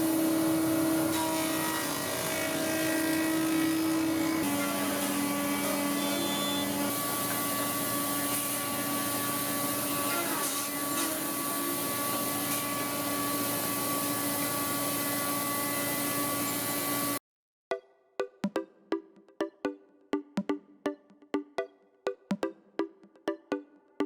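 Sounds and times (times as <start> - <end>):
woodworking machinery running: 0.0 - 17.2.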